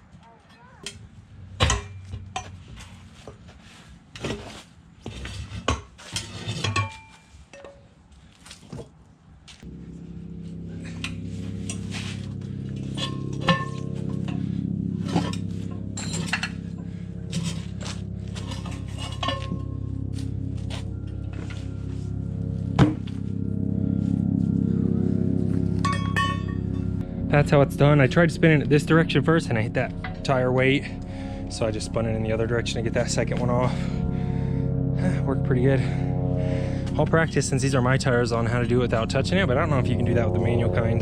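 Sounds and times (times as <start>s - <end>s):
background music: 9.7s - 41.0s.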